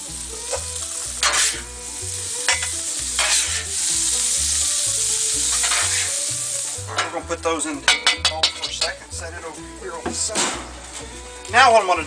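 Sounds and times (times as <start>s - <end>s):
vegetables sizzling on griddle: 0.0s - 12.0s
metal spatula scraping steel: 0.5s - 4.7s, 5.4s - 9.0s.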